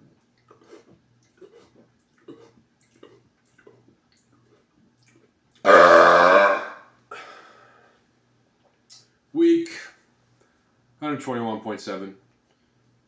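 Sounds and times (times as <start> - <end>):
man burping loudly: 5.7 - 6.8.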